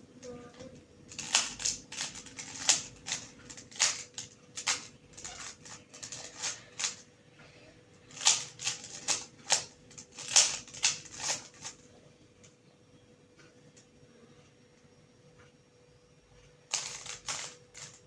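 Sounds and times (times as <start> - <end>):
puzzle cube turning clicks: 1.1 - 7.0, 8.1 - 11.8, 16.7 - 18.0.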